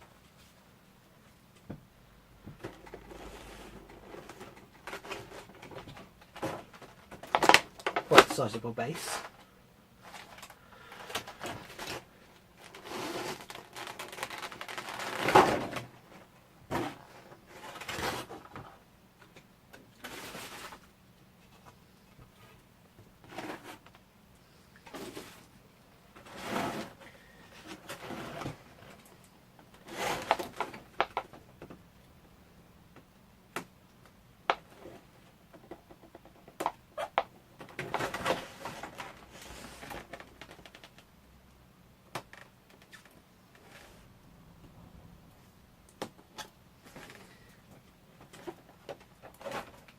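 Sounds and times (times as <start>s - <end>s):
plastic packaging rustling: 10.0s - 18.5s.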